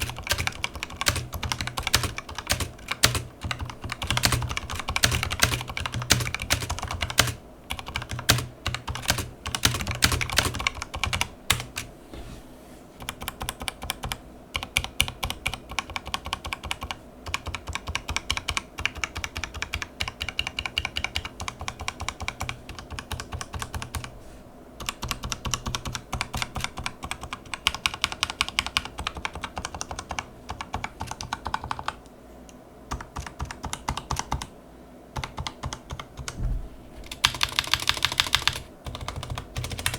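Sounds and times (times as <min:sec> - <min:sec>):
mechanical keyboard typing: 0:00.0 - 0:11.9, 0:13.0 - 0:24.1, 0:24.8 - 0:32.0, 0:32.9 - 0:34.5, 0:35.2 - 0:36.4, 0:37.1 - 0:39.9.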